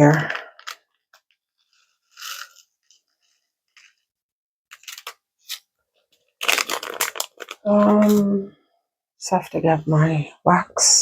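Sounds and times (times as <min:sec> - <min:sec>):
clicks and crinkly rustling: 0:04.7 - 0:08.3.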